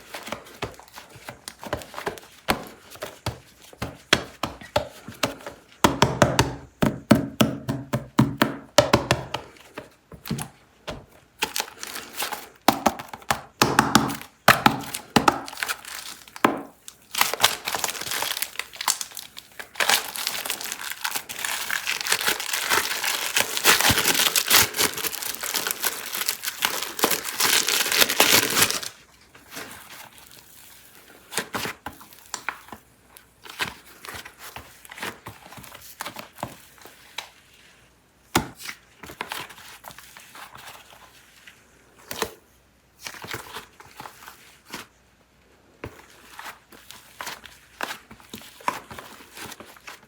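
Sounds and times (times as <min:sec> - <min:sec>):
plastic packaging crinkling: 0:11.4 - 0:13.2, 0:14.0 - 0:30.9.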